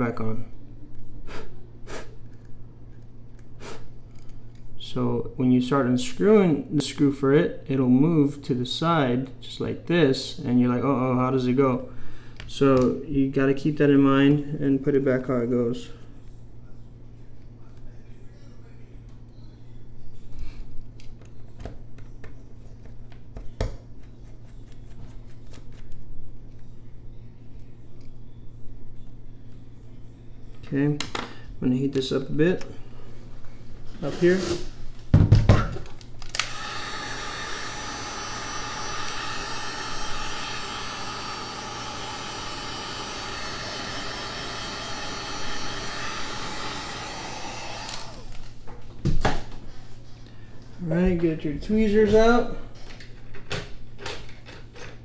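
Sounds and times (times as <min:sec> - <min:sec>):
hot air gun blowing: 0:36.4 - 0:48.4.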